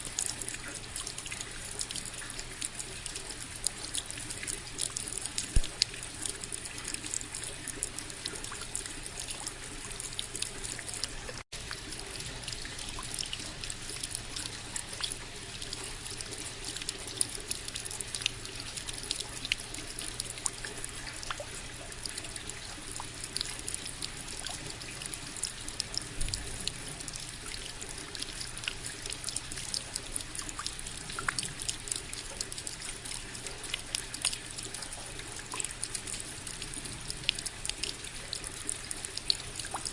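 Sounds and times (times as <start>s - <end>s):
drops and drips ticking: 0.0s - 39.9s.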